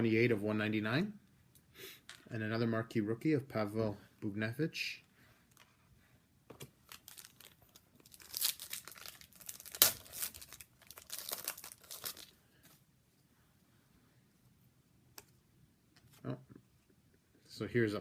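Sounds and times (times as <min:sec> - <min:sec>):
wrapper tearing and crinkling: 0:06.8 - 0:12.4.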